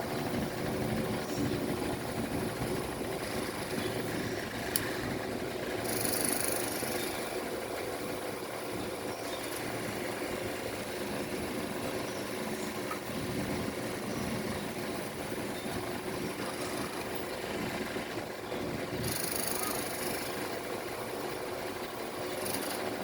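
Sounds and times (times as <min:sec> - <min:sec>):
engine running: 0:00.0 - 0:23.0
sharp click: 0:04.7 - 0:04.9.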